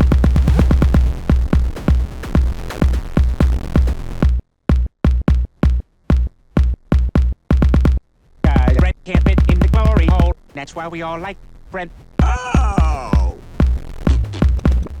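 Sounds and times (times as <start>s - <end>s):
pounding kick drum: 0.0s - 10.4s, 12.2s - 15.0s
electronic dance music: 8.5s - 11.3s, 12.2s - 13.4s.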